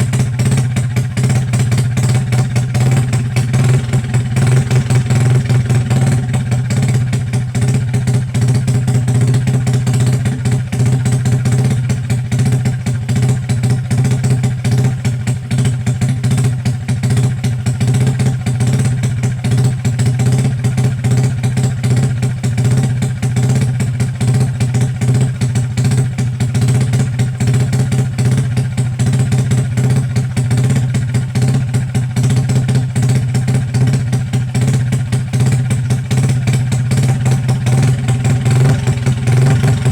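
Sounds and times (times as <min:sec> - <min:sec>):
truck engine idling: 0:01.8 - 0:08.2, 0:35.0 - 0:39.9.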